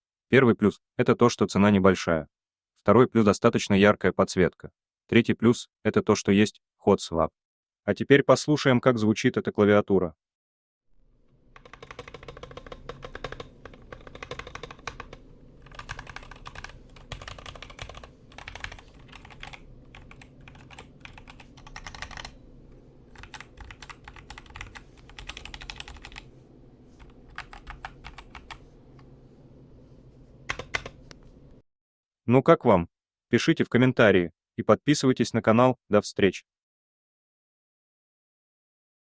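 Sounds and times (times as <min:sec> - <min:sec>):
keyboard keystroke clacks: 0:11.6 - 0:22.4, 0:23.1 - 0:26.3, 0:27.0 - 0:28.6, 0:30.5 - 0:31.2.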